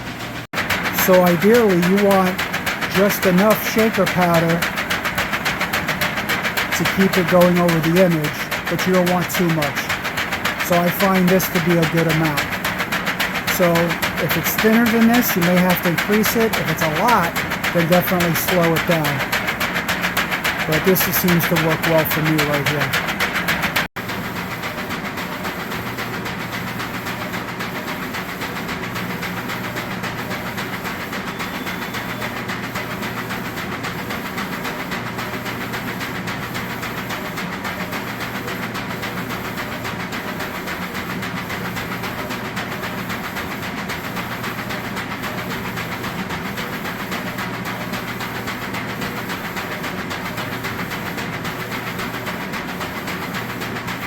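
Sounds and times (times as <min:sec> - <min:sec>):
fan hiss: 0:00.0 - 0:23.9
shaker machine rattling: 0:00.0 - 0:54.0.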